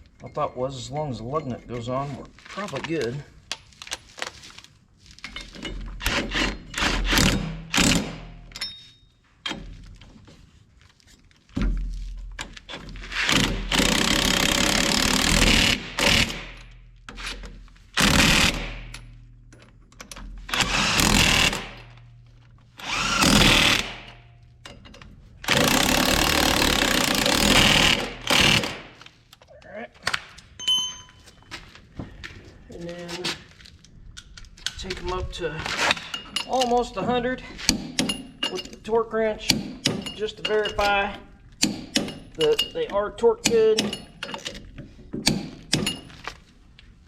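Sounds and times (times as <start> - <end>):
impact wrench bursts: 13.1 - 16.6, 17.9 - 19.0, 20.5 - 22.0, 22.8 - 24.2, 25.4 - 29.0.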